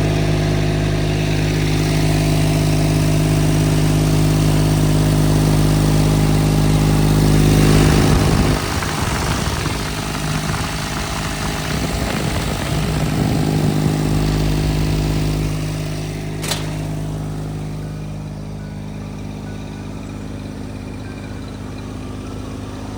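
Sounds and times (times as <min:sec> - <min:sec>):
diesel engine running: 0:00.0 - 0:22.9
sharp click: 0:16.4 - 0:16.9.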